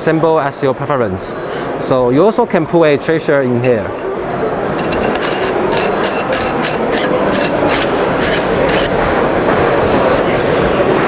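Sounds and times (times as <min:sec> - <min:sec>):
crowd noise: 0:02.5 - 0:11.0.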